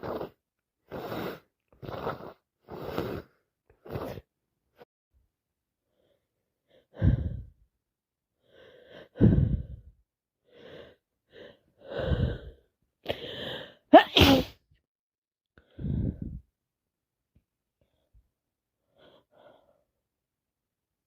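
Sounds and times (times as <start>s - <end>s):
woman sneezing: 14.0s - 14.6s.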